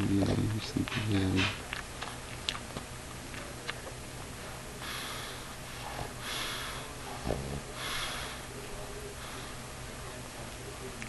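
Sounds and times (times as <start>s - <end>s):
dog snoring: 7.1s - 7.7s.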